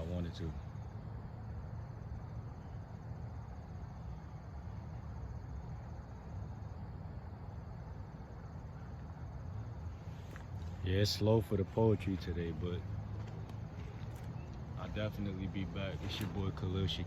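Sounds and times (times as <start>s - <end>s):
low background rumble: 0.0s - 17.0s.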